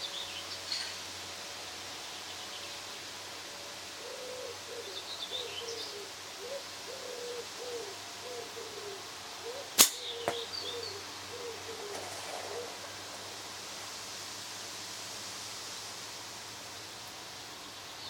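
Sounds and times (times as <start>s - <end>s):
birds calling: 4.0s - 14.0s
slingshot bands snapping: 9.8s - 10.4s.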